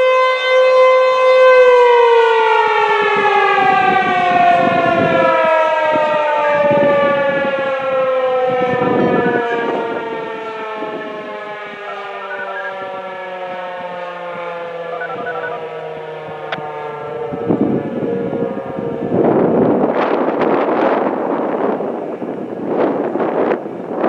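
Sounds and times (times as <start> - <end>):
warning siren winding down: 0.0 - 23.6
low rumbling noise: 16.4 - 23.2.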